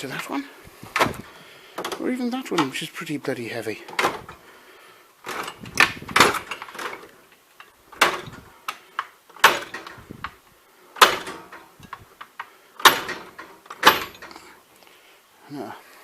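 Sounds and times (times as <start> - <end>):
metal drawers banging shut: 0.8 - 2.9, 3.8 - 4.4, 5.2 - 7.1, 7.9 - 8.5, 9.4 - 10.2, 11.0 - 12.0, 12.8 - 14.5
steel drawers rattling on slides: 3.8 - 4.4, 5.2 - 8.6, 9.3 - 10.2, 11.0 - 12.0, 12.8 - 14.5.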